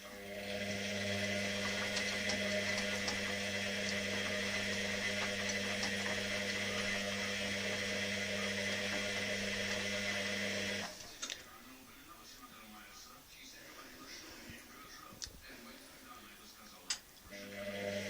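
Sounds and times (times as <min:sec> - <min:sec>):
washing machine running: 0:00.0 - 0:11.1, 0:17.3 - 0:18.0.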